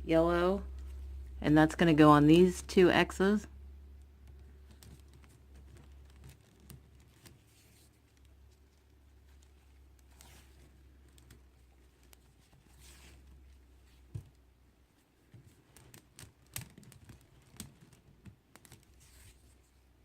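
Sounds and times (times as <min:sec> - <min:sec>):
soft fabric rustling: 0:00.1 - 0:02.5, 0:04.0 - 0:20.0
light clicks and taps: 0:03.9 - 0:13.4.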